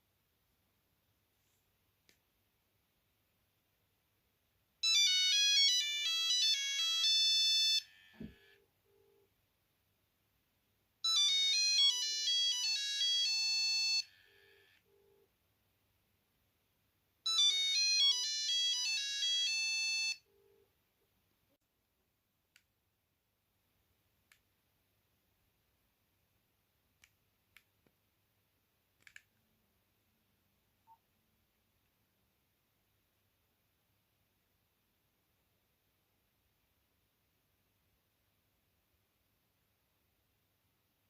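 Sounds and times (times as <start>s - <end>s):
mobile phone ringtone beeping melody: 4.8s - 9.2s, 11.0s - 15.2s, 17.3s - 20.6s.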